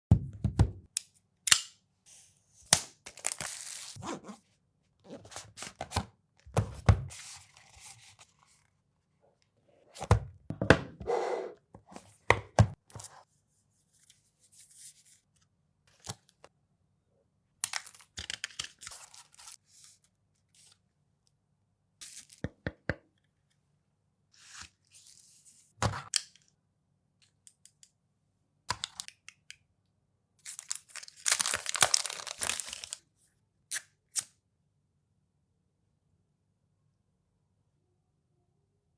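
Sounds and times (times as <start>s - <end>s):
packaging tearing and crinkling: 30.5s - 33.0s.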